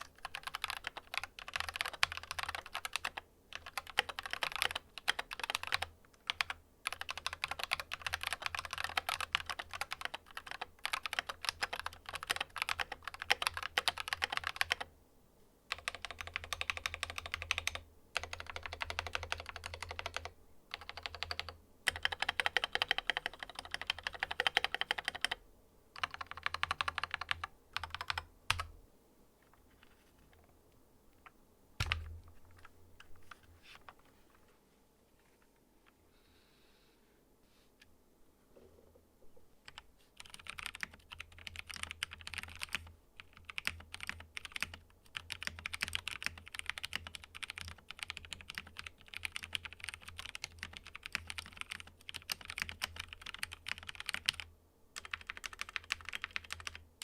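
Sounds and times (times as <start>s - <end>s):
fast mechanical keyboard typing: 0.0s - 14.9s, 15.7s - 25.4s, 26.0s - 28.7s, 39.7s - 56.8s.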